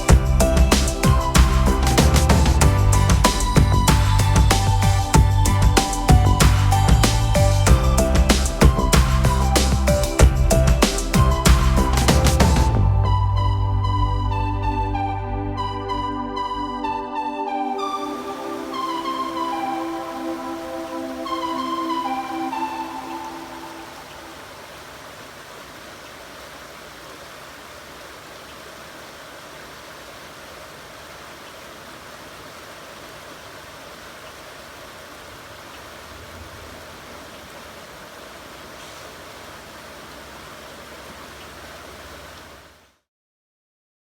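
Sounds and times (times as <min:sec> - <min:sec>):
river water rushing: 0:17.5 - 0:42.8.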